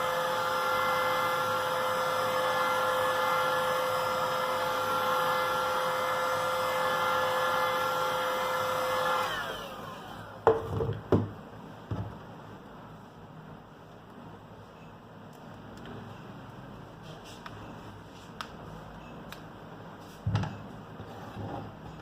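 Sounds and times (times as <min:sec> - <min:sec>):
small blower whining: 0:00.0 - 0:10.4.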